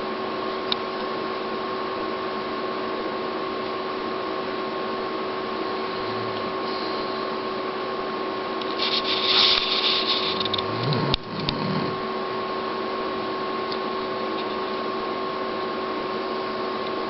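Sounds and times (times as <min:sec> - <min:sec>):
steady hum: 0:00.0 - 0:17.0
dog grunting: 0:05.6 - 0:07.1, 0:10.0 - 0:12.1
dog snuffling: 0:08.8 - 0:12.0.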